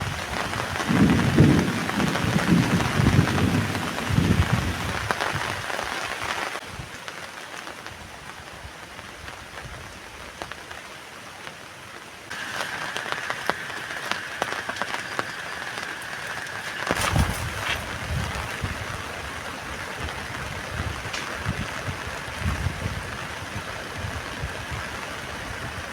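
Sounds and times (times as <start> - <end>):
low gusty rumbles: 0.0 - 5.7, 12.3 - 25.9
heavy rain on a tent: 0.0 - 25.9.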